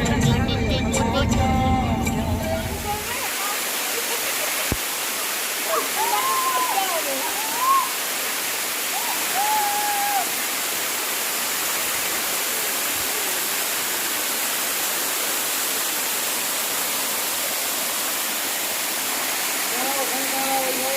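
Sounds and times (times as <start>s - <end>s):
waterfall rushing: 2.1s - 20.9s
wavering pitched call: 5.7s - 8.0s.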